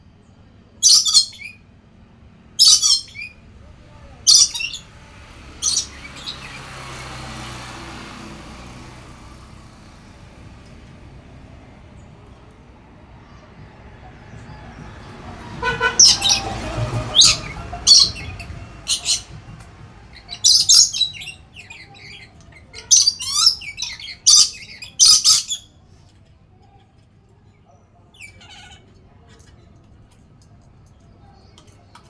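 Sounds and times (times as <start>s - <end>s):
parrot calling and chirping: 0.8s - 1.6s, 2.6s - 3.4s, 4.2s - 4.9s, 5.6s - 6.8s, 15.6s - 19.4s, 20.1s - 25.7s.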